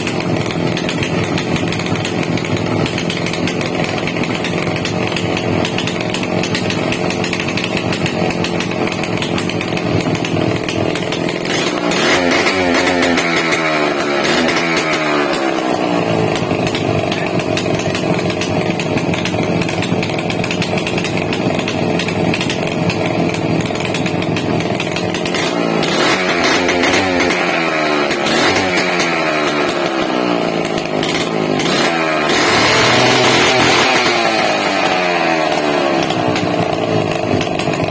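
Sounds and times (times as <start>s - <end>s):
power tool motor running: 0.0s - 37.9s.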